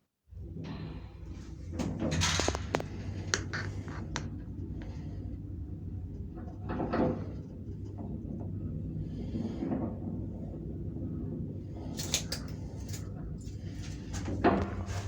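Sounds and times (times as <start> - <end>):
lift mechanism humming: 0.3 - 15.0.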